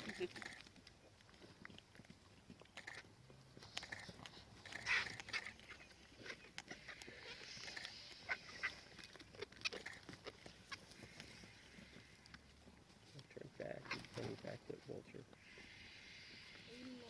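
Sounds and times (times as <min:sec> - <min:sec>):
animal squawks and squeaks: 0:03.7 - 0:12.2, 0:13.8 - 0:14.4.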